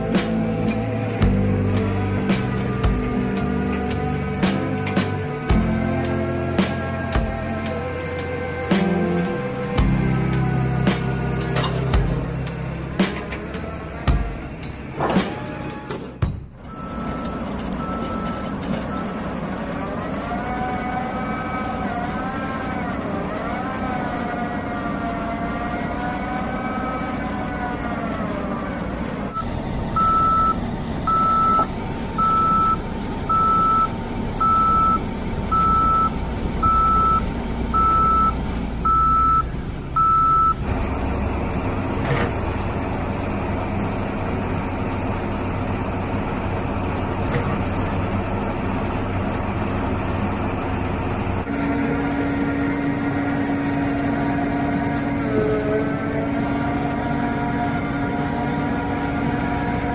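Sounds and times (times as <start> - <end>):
diesel engine running: 0.0 - 59.9
travel alarm beeps: 16.7 - 19.1, 29.3 - 40.6.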